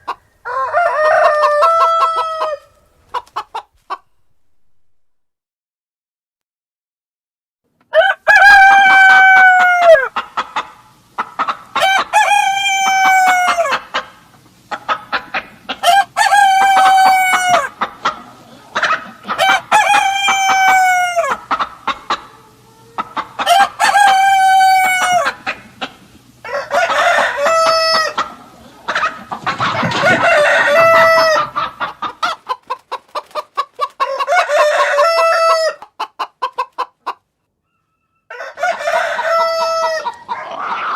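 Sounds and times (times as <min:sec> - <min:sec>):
roosters crowing: 0:00.0 - 0:02.8, 0:07.9 - 0:10.2, 0:11.7 - 0:14.0, 0:15.7 - 0:25.8, 0:26.4 - 0:32.6, 0:33.6 - 0:36.7, 0:37.6 - 0:40.9
chickens clucking: 0:00.0 - 0:04.4, 0:07.9 - 0:40.9.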